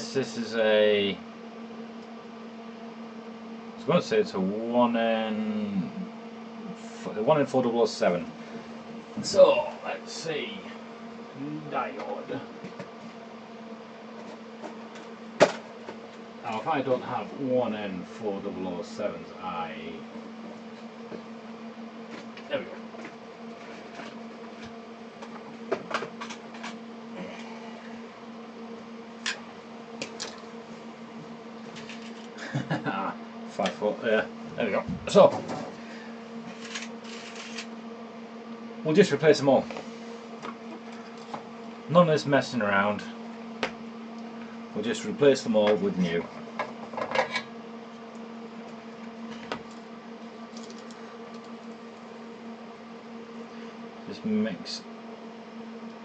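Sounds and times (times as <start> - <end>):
low electrical hum: 0.0 - 56.0.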